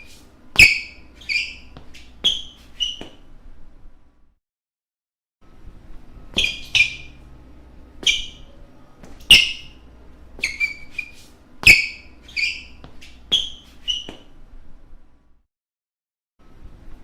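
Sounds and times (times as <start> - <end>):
basketball shoes squeaking: 0.0 - 3.3, 6.3 - 7.3, 8.0 - 14.4.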